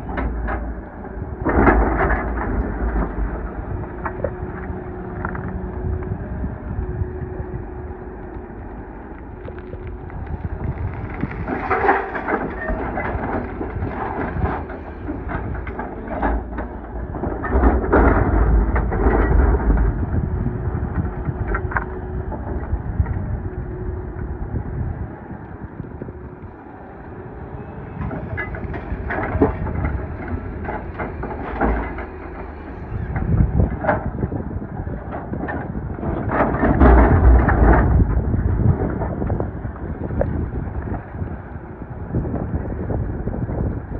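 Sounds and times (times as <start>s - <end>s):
excavator diesel engine rumble: 0.0s - 43.9s
gravel scraping and pouring: 8.8s - 15.3s.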